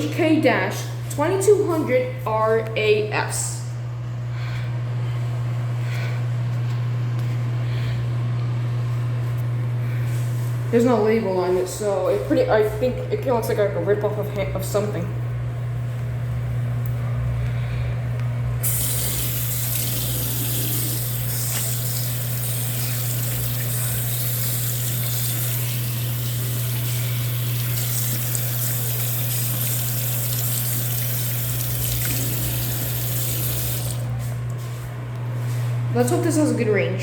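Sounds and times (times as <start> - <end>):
electric hand dryer blowing: 18.5 - 34.3.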